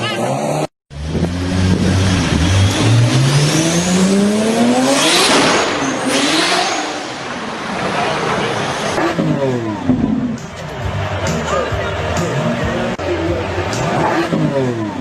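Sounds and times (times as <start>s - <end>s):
car engine revving hard: 0.1s - 10.3s, 13.6s - 15.0s.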